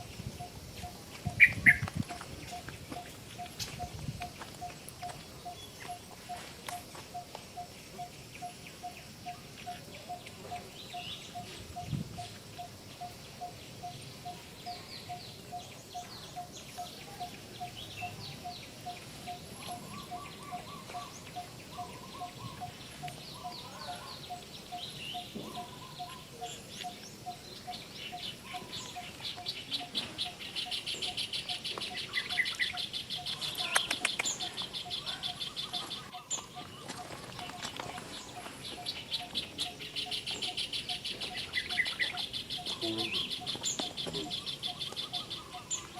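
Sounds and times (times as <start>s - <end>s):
high bird chirps: 1.3s - 7.7s.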